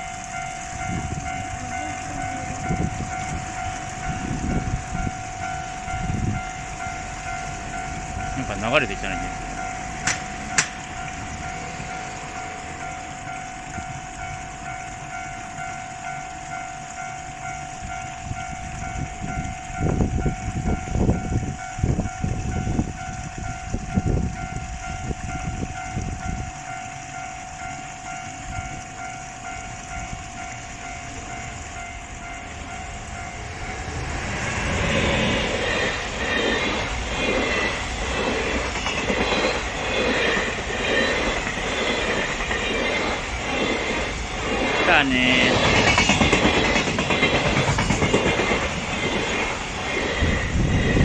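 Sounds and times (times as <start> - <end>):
approaching train rushing: 0.0 - 51.0
railroad crossing bell ringing: 0.0 - 51.0.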